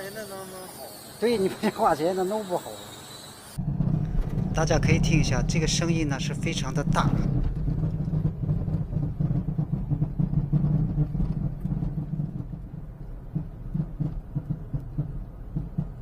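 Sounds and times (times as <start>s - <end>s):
car driving: 3.1s - 16.0s
rumbling clunk from chassis: 3.6s - 16.0s.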